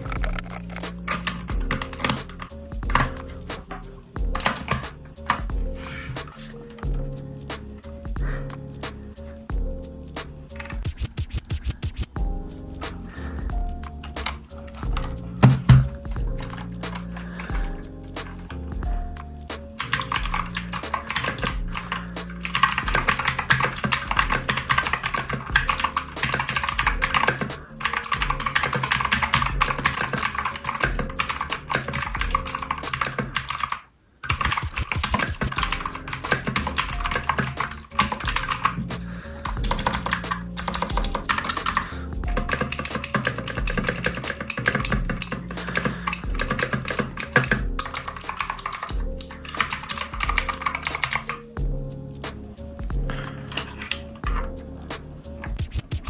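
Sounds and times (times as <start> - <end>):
mechanical keyboard typing: 0.0 - 5.6, 14.0 - 17.6, 19.8 - 51.4
background music: 0.0 - 56.0.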